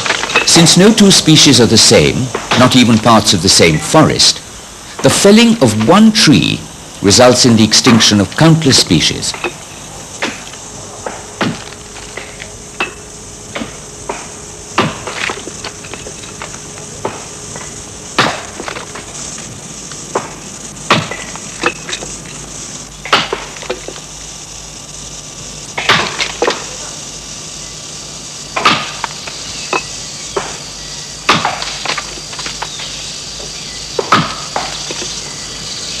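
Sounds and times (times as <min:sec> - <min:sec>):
forest insects hissing: 0:00.0 - 0:36.0
axe chopping tree trunk: 0:11.1 - 0:11.7, 0:25.8 - 0:26.6, 0:28.6 - 0:29.2, 0:31.3 - 0:32.7, 0:34.0 - 0:35.0.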